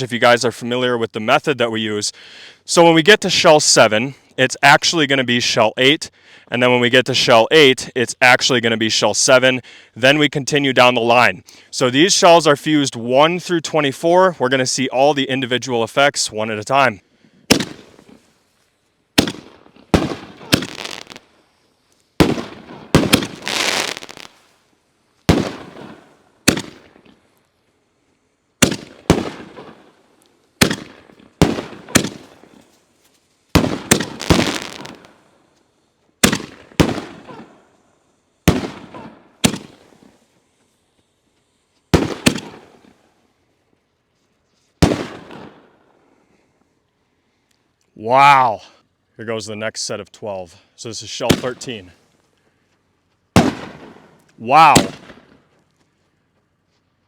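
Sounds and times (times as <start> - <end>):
firework shells booming: 17.5 - 18.2, 19.2 - 21.3, 22.2 - 24.4, 25.2 - 27.3, 28.6 - 30.0, 30.6 - 32.6, 33.5 - 35.2, 36.2 - 37.6, 38.4 - 40.3, 41.9 - 43.0, 44.8 - 45.7, 51.2 - 51.7, 53.4 - 55.4.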